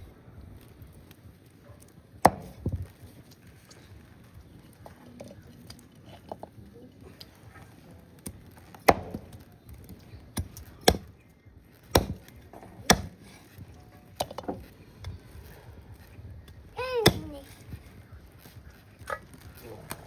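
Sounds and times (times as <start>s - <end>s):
heavy blade chopping on block: 2.2s - 2.7s, 8.8s - 9.4s, 10.4s - 11.1s, 11.9s - 13.3s, 16.8s - 17.3s.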